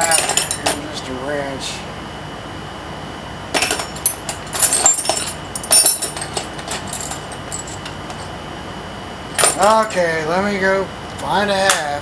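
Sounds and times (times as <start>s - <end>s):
metal hand tools clinking: 0.0s - 0.8s, 3.6s - 8.0s, 9.4s - 10.1s.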